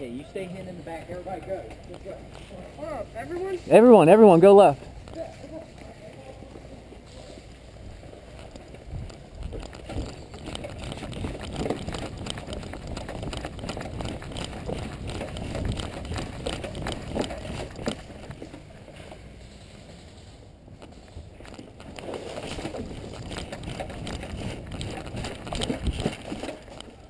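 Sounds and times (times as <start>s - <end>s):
gear crackling and rustling: 4.6s - 27.0s
footsteps crunching through brush: 21.6s - 27.0s.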